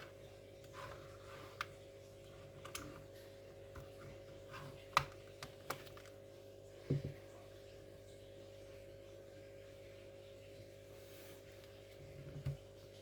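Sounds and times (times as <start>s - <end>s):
faint steady hum: 0.0s - 13.0s
plastic laptop parts clicking: 4.8s - 6.2s.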